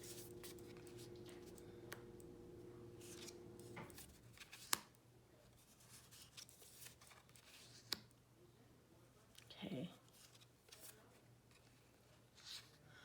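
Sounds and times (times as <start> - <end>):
cards sliding and tapping: 0.0 - 2.3, 3.0 - 4.9
faint steady hum: 0.0 - 6.1.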